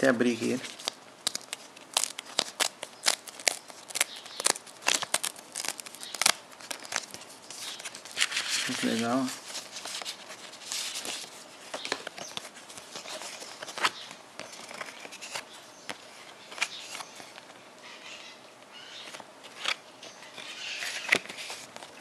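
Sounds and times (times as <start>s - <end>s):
paper rustling: 0.4s - 17.5s.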